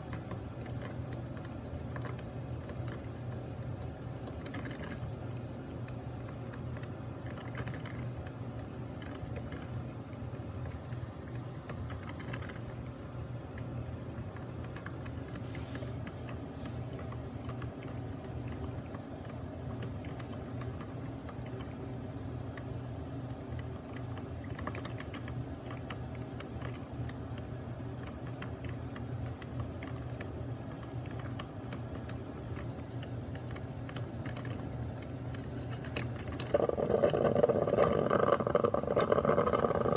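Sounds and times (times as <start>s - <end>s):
low hum: 32.2s - 39.9s.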